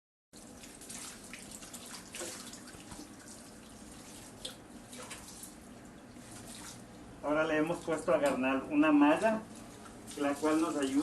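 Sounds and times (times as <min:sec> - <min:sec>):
water splashing into basin: 0:00.4 - 0:06.9, 0:09.1 - 0:11.0
water drips: 0:00.4 - 0:07.0, 0:09.1 - 0:11.0.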